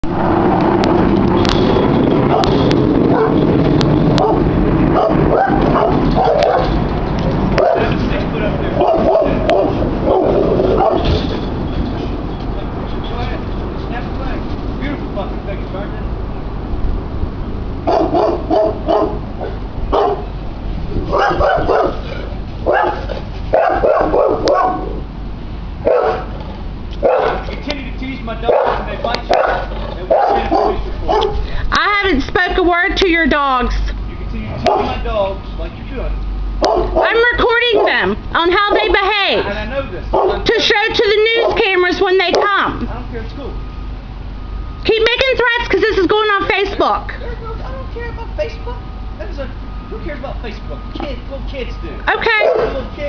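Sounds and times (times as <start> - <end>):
constant low rumble: 0.0 - 53.0
dogs barking aggressively: 1.8 - 12.3, 17.8 - 27.6, 28.4 - 31.6, 34.6 - 35.0, 36.5 - 39.0, 40.0 - 42.6, 52.2 - 52.9.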